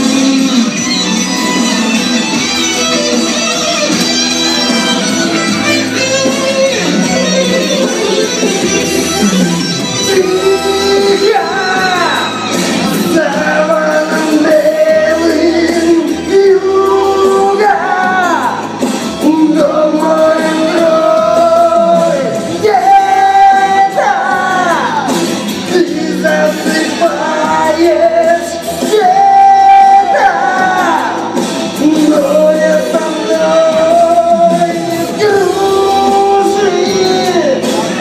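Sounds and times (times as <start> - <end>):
backing instruments: 0.0 - 38.0
person singing: 9.8 - 38.0.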